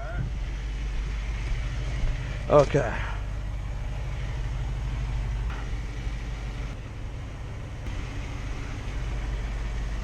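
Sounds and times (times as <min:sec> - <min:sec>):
truck engine idling: 0:00.0 - 0:10.0.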